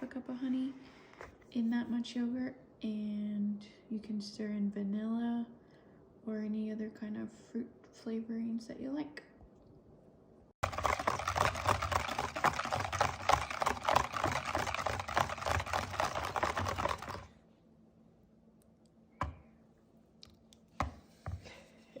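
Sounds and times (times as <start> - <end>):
spoon stirring thick yogurt: 10.6 - 17.3.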